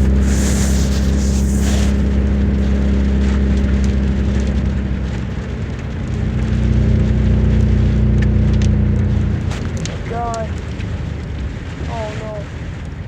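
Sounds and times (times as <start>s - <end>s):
low hum: 0.0s - 5.5s
heavy rain falling: 0.0s - 13.0s.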